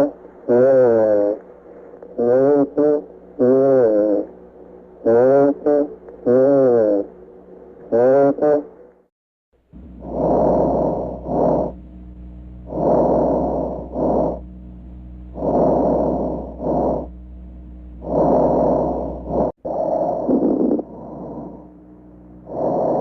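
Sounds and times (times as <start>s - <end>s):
steady low hum: 0.0s - 23.0s
lung breathing sounds: 18.0s - 21.8s.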